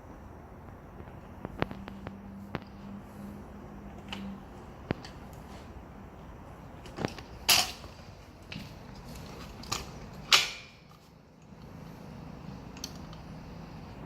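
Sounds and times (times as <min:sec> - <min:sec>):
scooter mechanism metal clacks: 0:06.8 - 0:11.1.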